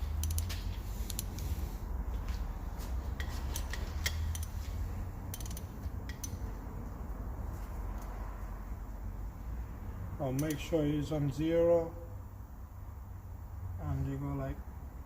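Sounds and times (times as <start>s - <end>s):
steady low hum: 0.0s - 15.0s
light metallic tool clicks: 3.2s - 4.6s, 5.3s - 6.4s, 10.4s - 10.6s.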